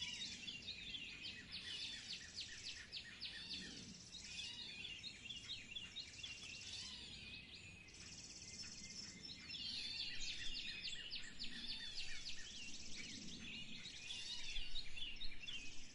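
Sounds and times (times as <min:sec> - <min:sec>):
songbirds chirping and singing: 0:00.0 - 0:15.9.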